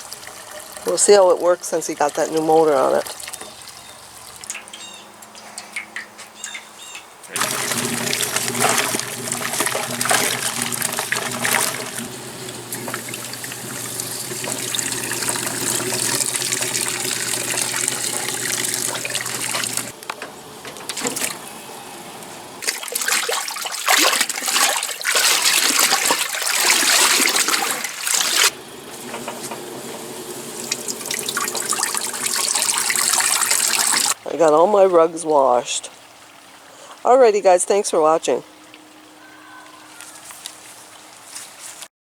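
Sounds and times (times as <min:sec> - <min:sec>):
water gushing and splashing: 0:00.0 - 0:04.9, 0:07.3 - 0:36.9
water sloshing in washing machine tub: 0:00.0 - 0:06.6, 0:07.3 - 0:36.6
electric motor humming: 0:07.4 - 0:22.6, 0:28.4 - 0:34.2.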